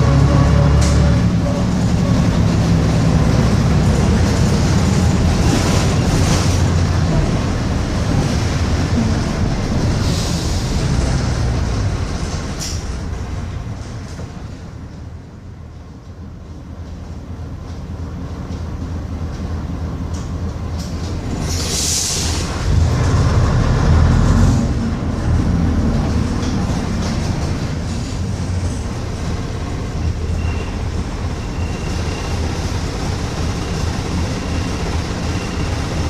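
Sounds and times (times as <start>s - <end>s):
bus diesel engine droning: 0.0s - 36.0s
air hiss: 21.5s - 22.6s.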